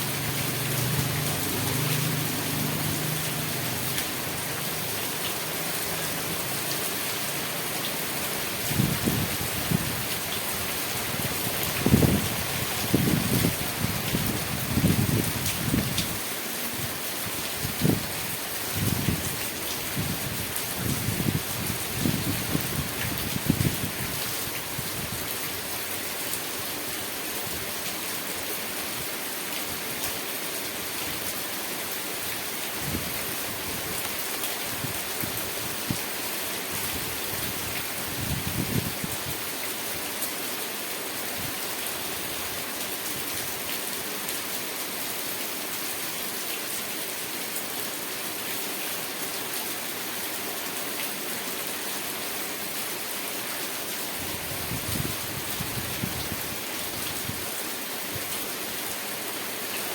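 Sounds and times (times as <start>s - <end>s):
rain falling: 0.0s - 59.9s.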